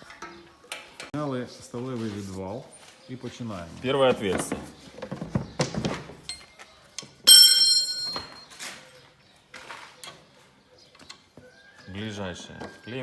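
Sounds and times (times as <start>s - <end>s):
sharp metallic clang: 7.3s - 8.5s.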